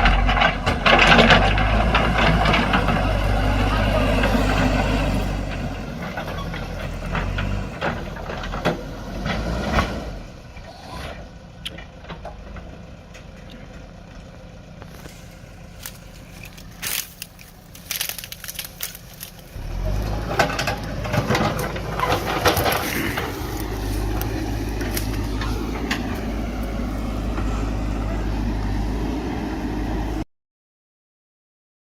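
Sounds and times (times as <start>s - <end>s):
backhoe diesel engine working: 0.0s - 30.3s
sharp cracks and snaps: 15.8s - 19.6s.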